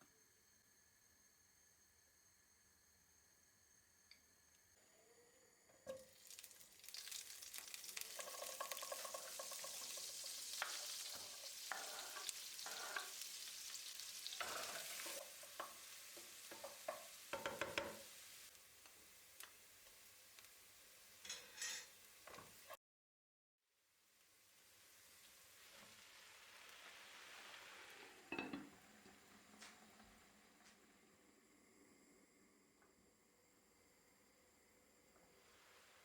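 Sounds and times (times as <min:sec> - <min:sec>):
food sizzling in a pan: 0:05.6 - 0:22.8, 0:23.8 - 0:31.4, 0:34.8 - 0:36.0
utensil scraping and clinking pan: 0:08.0 - 0:13.3, 0:14.4 - 0:18.1, 0:21.2 - 0:22.4.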